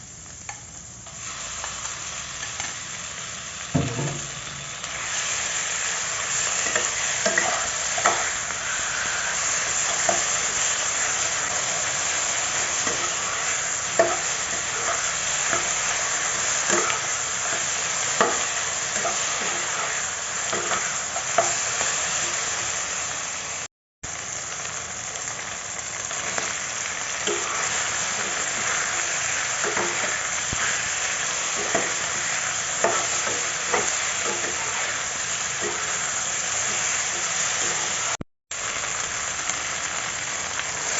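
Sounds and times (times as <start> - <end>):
food sizzling in a pan: 0.0 - 40.9
spatula scraping and tapping pan: 6.5 - 8.4, 13.9 - 15.9, 16.6 - 19.9, 20.5 - 21.6, 27.2 - 30.9, 31.5 - 35.0, 35.6 - 38.0.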